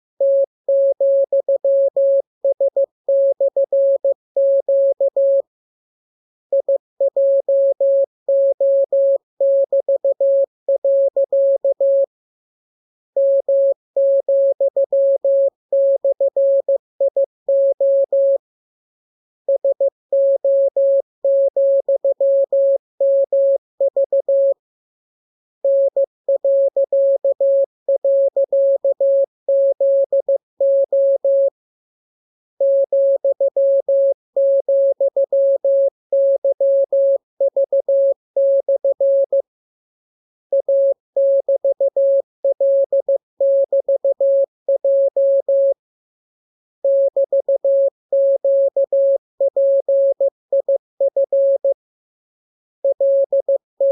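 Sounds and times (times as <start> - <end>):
morse code tone: 52.9 - 53.9.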